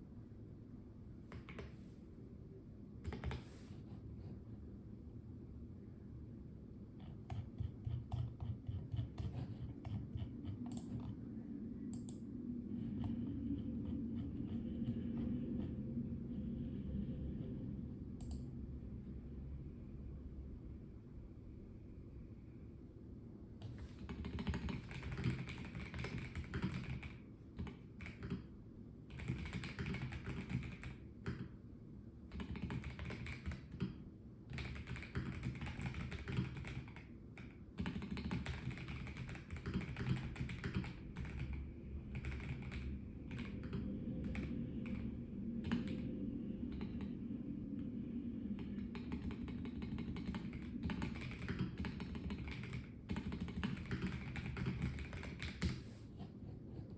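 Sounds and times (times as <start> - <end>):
mechanical keyboard typing: 3.0 - 3.4, 24.0 - 28.5, 29.1 - 31.5, 32.3 - 45.0, 48.6 - 55.8.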